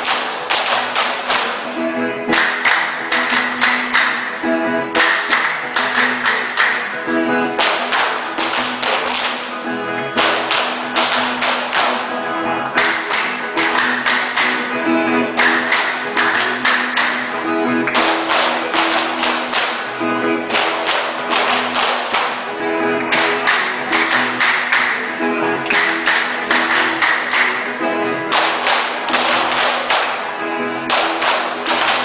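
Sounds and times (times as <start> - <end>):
guitars strummed rhythmically: 0.0 - 32.0.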